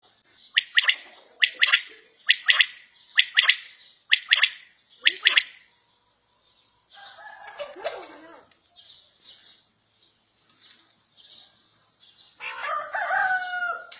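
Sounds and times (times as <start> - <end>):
quail calling: 0.5 - 5.7.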